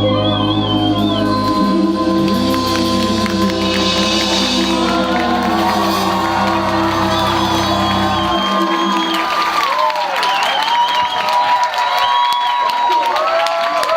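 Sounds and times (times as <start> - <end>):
deep bass drone: 0.0 - 9.6
live band music: 0.0 - 10.3
high whistle-like tones: 0.0 - 12.8
crowd whooping and cheering: 0.0 - 13.9.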